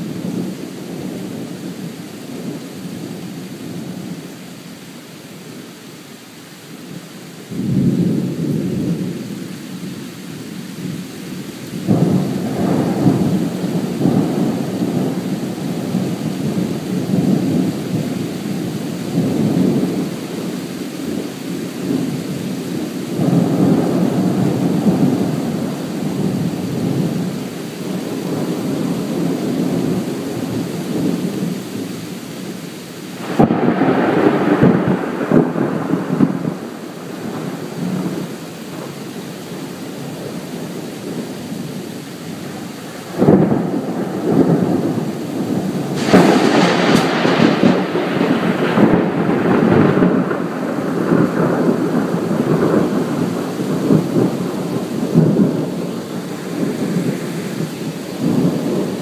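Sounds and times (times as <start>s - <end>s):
thunder rumbling: 11.7s - 31.5s, 33.2s - 59.0s
thunder claps: 33.2s - 38.2s, 43.1s - 59.0s.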